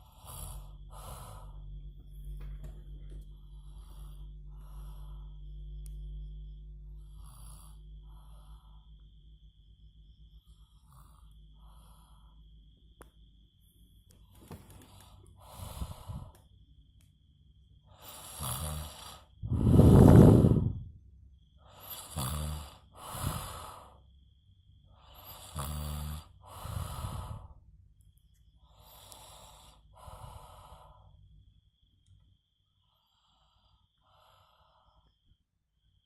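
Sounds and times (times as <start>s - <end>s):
man snoring: 0.0s - 1.6s, 7.0s - 8.9s, 17.9s - 20.8s, 21.7s - 24.0s, 25.0s - 27.6s.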